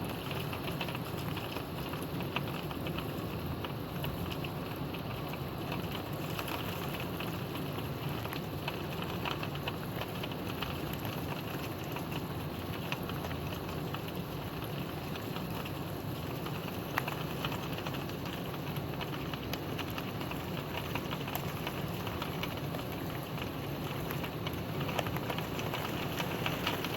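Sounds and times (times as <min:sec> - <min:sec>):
raindrops ticking on a surface: 0:00.0 - 0:26.9
steady rain hiss: 0:00.0 - 0:26.9.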